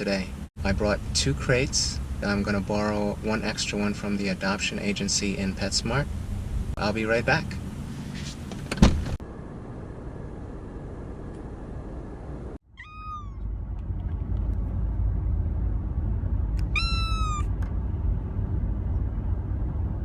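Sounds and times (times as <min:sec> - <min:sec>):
steady low rumble: 0:00.0 - 0:08.0, 0:09.1 - 0:20.0
kittens meowing: 0:12.8 - 0:13.4, 0:16.6 - 0:17.5.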